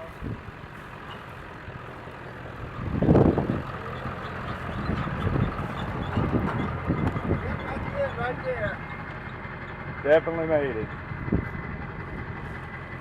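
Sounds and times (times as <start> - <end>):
truck engine running under load: 0.0 - 13.0.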